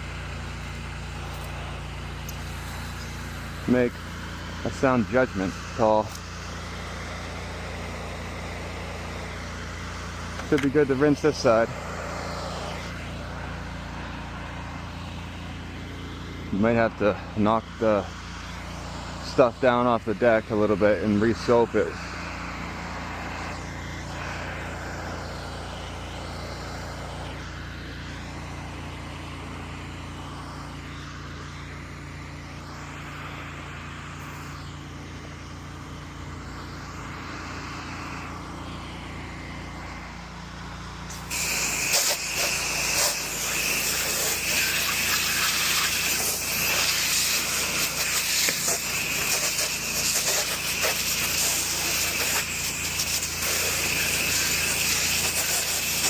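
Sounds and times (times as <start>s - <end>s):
pressure washer engine running: 0.0s - 56.0s
water jet hissing: 41.1s - 56.0s.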